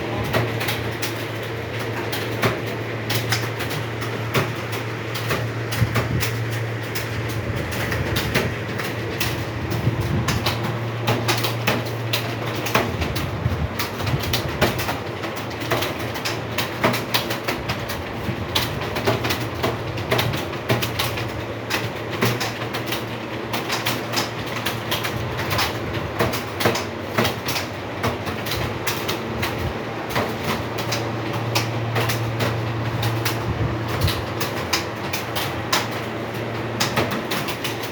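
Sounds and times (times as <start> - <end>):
steady low hum: 0.0 - 21.8.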